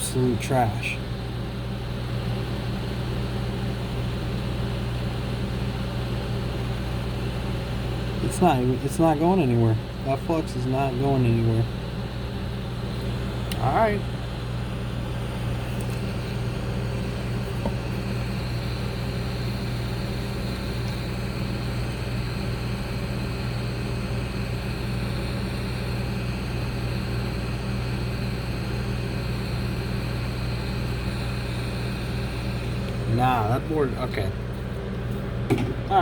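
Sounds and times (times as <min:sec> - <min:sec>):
electrical hum: 0:00.0 - 0:36.0
heat gun fan rushing: 0:00.0 - 0:36.0.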